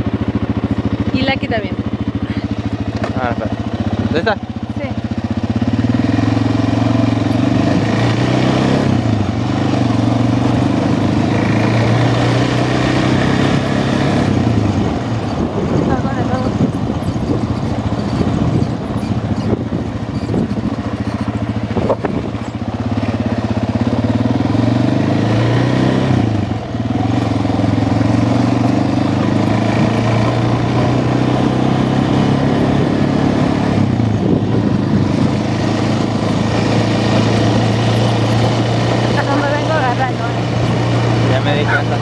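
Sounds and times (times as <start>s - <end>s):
atv engine running: 0.0s - 42.0s.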